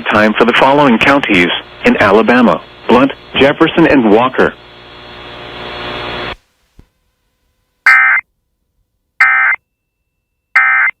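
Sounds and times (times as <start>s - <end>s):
steady electronic buzz: 0.2s - 6.4s
alert data tone bursts: 7.9s - 8.2s, 9.2s - 9.6s, 10.5s - 11.0s.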